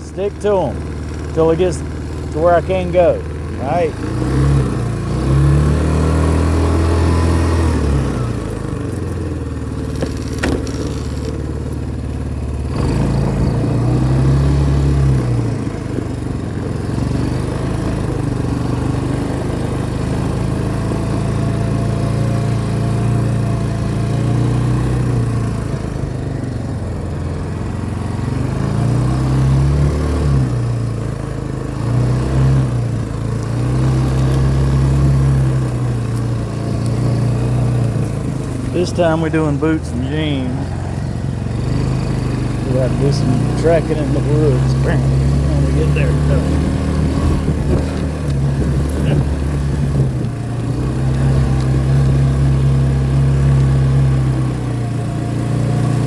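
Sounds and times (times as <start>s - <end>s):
atv engine revving: 0.0s - 56.0s.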